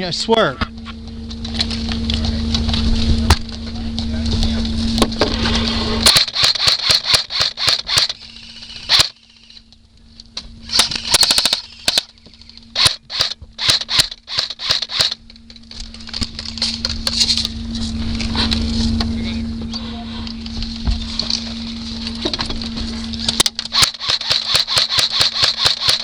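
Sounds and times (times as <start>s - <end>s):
steady low hum: 0.0s - 26.0s
airsoft guns firing: 6.1s - 9.2s, 12.8s - 15.2s, 23.7s - 26.0s.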